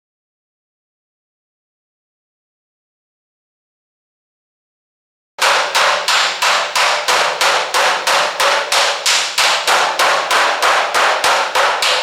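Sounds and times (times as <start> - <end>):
hammer striking sheet metal: 5.4 - 12.0.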